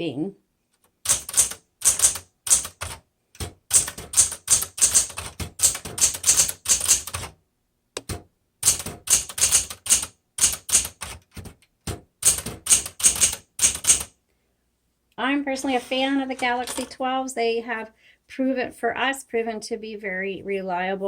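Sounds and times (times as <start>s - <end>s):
manual typewriter typing: 1.0s - 7.4s, 8.0s - 14.1s.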